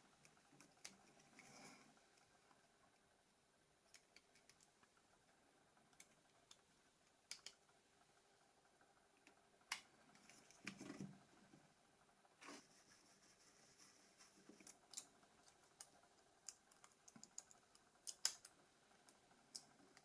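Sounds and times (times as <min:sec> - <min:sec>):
plastic phone parts clicking: 0:15.7 - 0:18.6.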